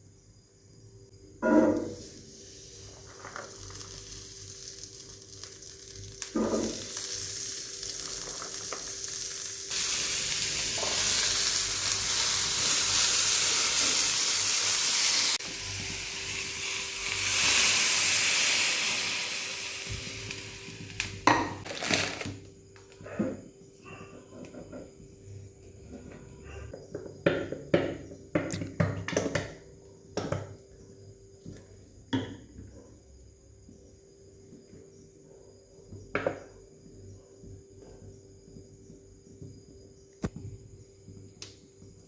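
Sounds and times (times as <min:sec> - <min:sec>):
food sizzling in a pan: 0:01.7 - 0:22.3.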